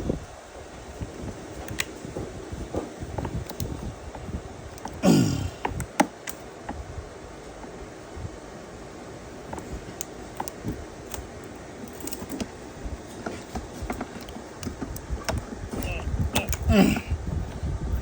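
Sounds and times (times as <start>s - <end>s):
person speaking: 15.6s - 17.2s.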